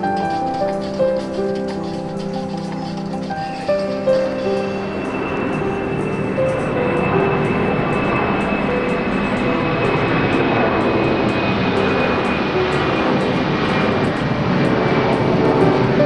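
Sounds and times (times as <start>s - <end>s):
jet engines roaring with whine: 0.0s - 16.0s.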